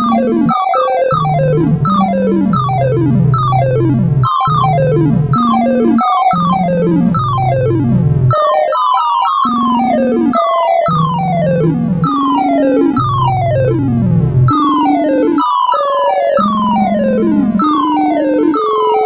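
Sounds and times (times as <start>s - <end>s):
descending synthesized beeps: 0.0s - 8.0s, 9.4s - 13.9s
held low synth tone: 1.1s - 8.4s.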